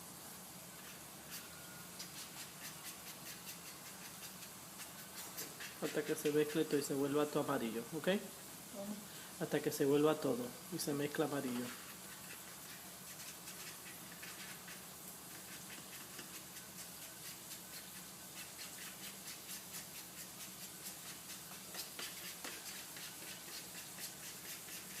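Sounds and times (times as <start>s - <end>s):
utensil scraping a bowl: 0.8s - 6.9s, 11.4s - 25.0s.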